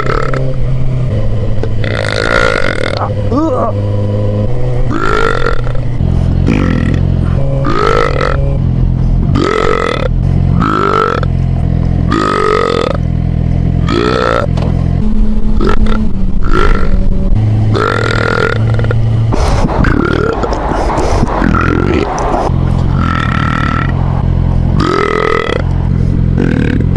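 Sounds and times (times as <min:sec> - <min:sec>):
man belching loudly: 0:00.0 - 0:00.5, 0:01.6 - 0:03.8, 0:04.9 - 0:08.6, 0:09.3 - 0:11.3, 0:12.0 - 0:13.1, 0:13.8 - 0:14.6, 0:15.6 - 0:17.1, 0:17.7 - 0:19.0, 0:19.8 - 0:20.5, 0:21.4 - 0:22.1, 0:22.9 - 0:24.0, 0:24.8 - 0:25.7, 0:26.3 - 0:26.9
low engine drone: 0:00.0 - 0:26.9.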